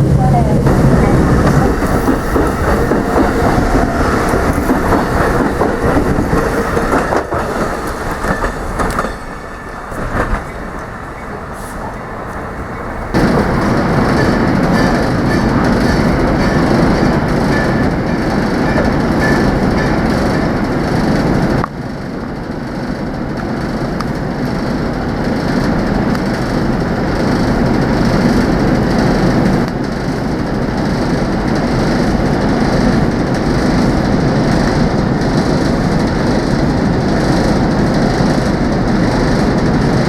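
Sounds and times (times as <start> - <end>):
train wheels on rails: 0.0 - 40.0.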